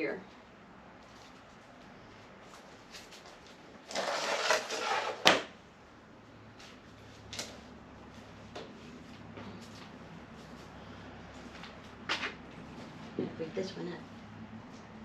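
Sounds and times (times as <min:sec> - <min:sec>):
potting soil scraping and rustling: 0:02.9 - 0:05.3.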